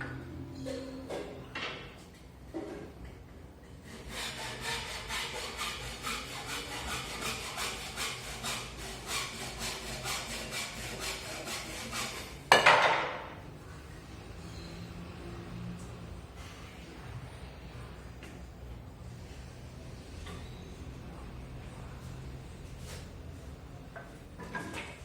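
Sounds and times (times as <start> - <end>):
rhythmic scraping on hard surface: 3.8 - 12.4.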